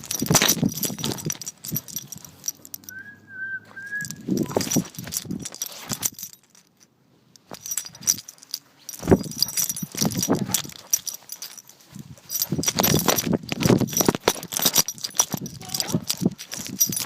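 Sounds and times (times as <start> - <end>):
thin wavering whistle tone: 2.9 - 4.2.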